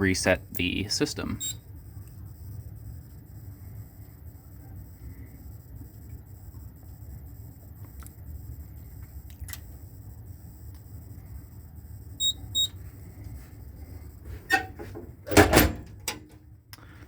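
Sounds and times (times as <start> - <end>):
low steady hum: 0.0 - 17.0
high-pitched beeps: 12.2 - 12.7.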